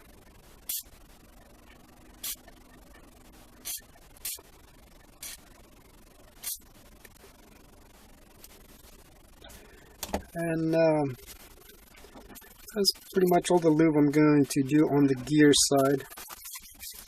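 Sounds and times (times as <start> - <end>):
aerosol spray hiss: 0.7 - 0.9, 2.2 - 2.4, 3.6 - 4.4, 5.2 - 5.4, 6.4 - 6.6.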